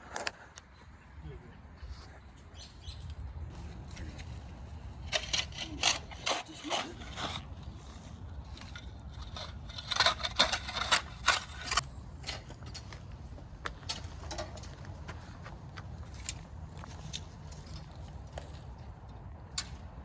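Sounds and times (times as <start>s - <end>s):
steady low rumble: 1.1s - 6.3s.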